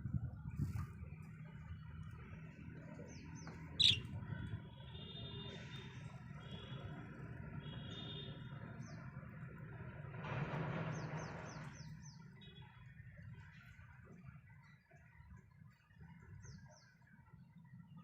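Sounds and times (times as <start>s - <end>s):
budgerigars chirping: 3.8s - 4.1s.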